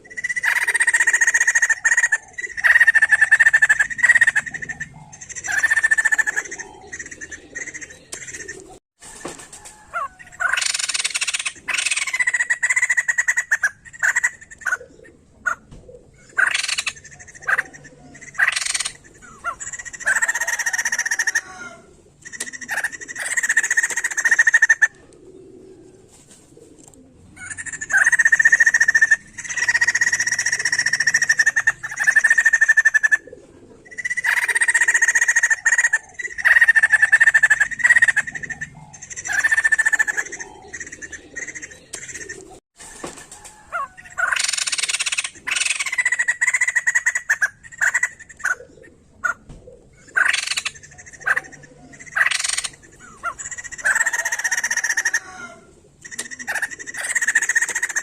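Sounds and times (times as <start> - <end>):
bird calling: 0.0 - 58.0.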